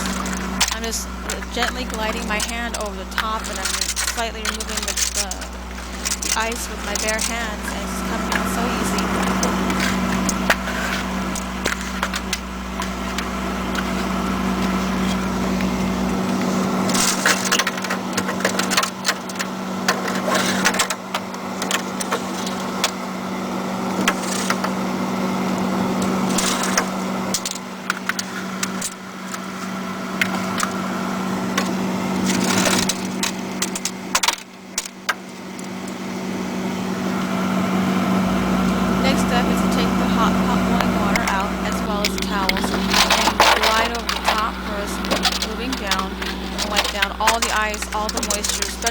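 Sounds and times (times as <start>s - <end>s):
ice cracking and scraping: 0.0s - 19.5s, 40.0s - 48.9s
steady low hum: 0.0s - 48.9s.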